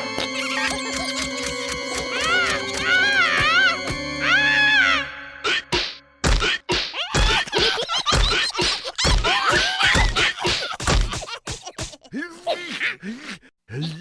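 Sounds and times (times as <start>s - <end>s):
cartoon thuds and whacks: 5.7s - 11.9s.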